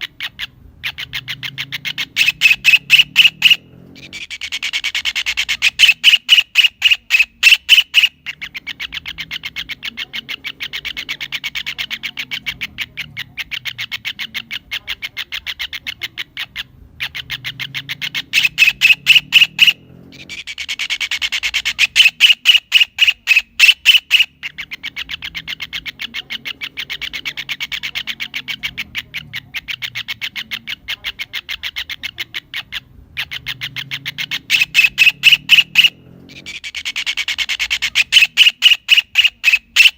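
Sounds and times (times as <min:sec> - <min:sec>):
kingfisher calling: 0:00.0 - 0:39.9.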